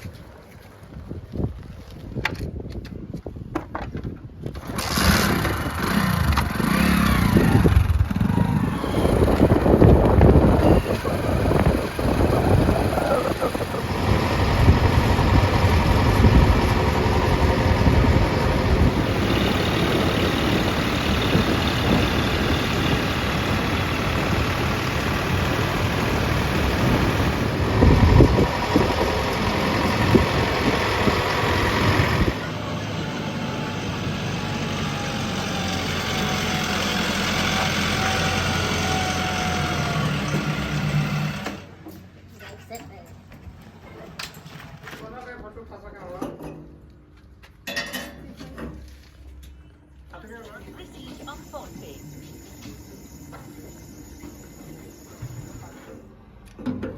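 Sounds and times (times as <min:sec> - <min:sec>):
diesel engines working: 0:04.6 - 0:42.8.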